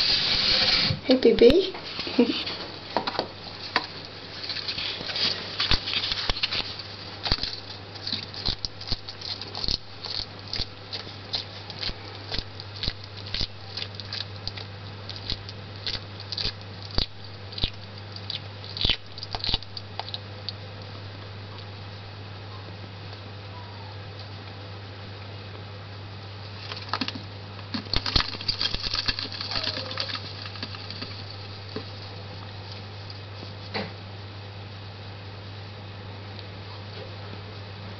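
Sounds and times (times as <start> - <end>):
steady low hum: 0.0 - 37.9
irregular clicks and crackles: 3.7 - 20.6, 26.6 - 33.9.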